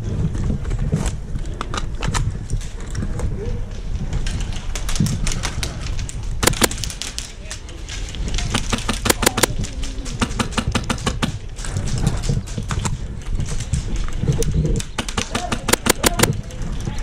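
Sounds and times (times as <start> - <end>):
airsoft gun shots: 6.4 - 7.0, 8.8 - 9.6, 15.5 - 16.4.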